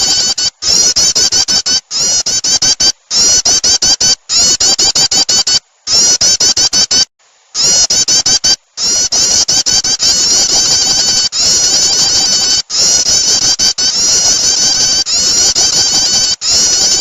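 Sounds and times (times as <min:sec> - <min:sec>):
bird chattering calls: 0:00.0 - 0:07.0, 0:07.6 - 0:17.0.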